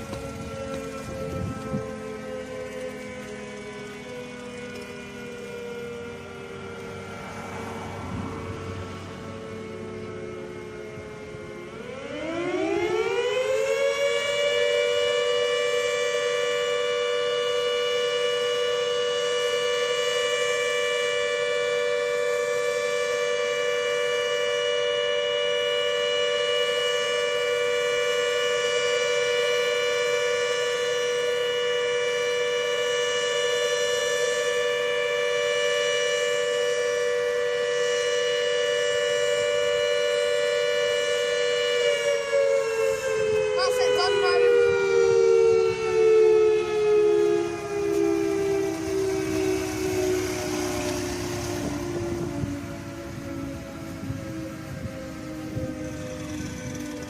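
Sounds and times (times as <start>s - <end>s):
electromechanical siren wailing: 0.0s - 57.0s.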